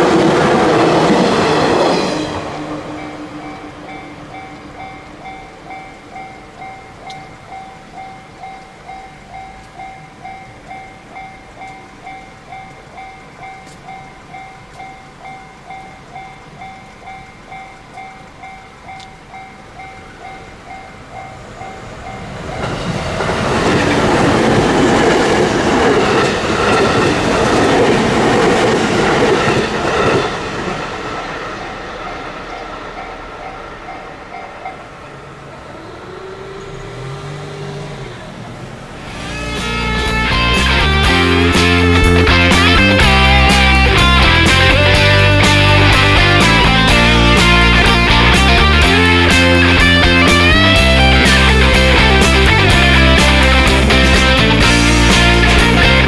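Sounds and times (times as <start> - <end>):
railroad crossing warning bell: 0.0 - 30.4, 31.2 - 53.0
train wheels clattering on rails: 0.0 - 34.9.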